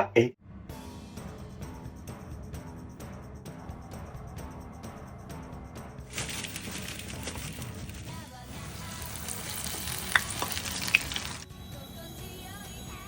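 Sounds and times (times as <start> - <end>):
food sizzling in hot oil: 6.1 - 11.5
oil popping: 6.1 - 11.5.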